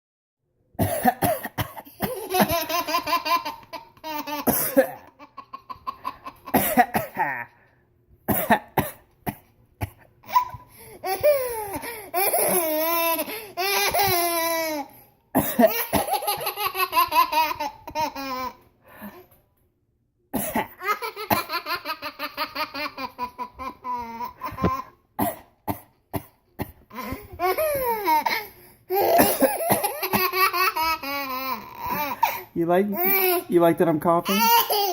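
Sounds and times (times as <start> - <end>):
adult pretend coughing: 0.8 - 2.3, 4.5 - 5.1, 6.5 - 7.6, 8.3 - 10.5, 28.4 - 30.3
baby laughing: 2.0 - 7.7, 10.2 - 14.9, 15.6 - 18.6, 20.6 - 25.0, 26.9 - 33.6, 34.2 - 34.9.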